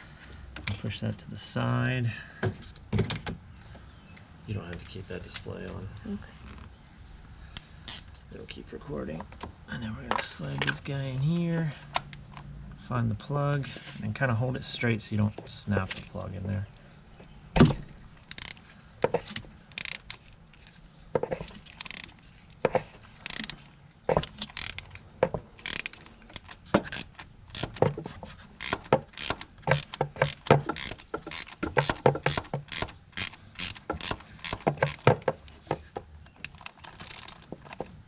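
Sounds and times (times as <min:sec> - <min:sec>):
socket ratchet clicking: 0:07.6 - 0:08.1, 0:18.2 - 0:18.6, 0:19.7 - 0:20.2, 0:21.8 - 0:22.2, 0:23.2 - 0:23.6, 0:24.4 - 0:27.9, 0:28.6 - 0:35.5.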